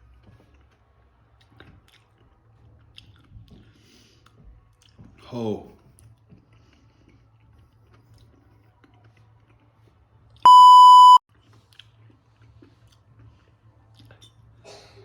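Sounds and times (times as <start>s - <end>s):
censor bleep: 10.5s - 11.2s.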